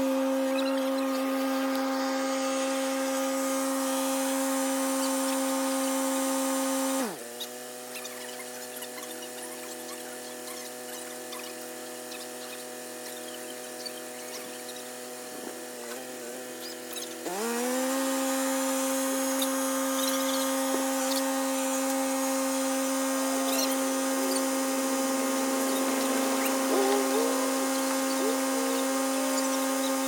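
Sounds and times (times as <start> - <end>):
engine revving up: 17.2 - 30.0.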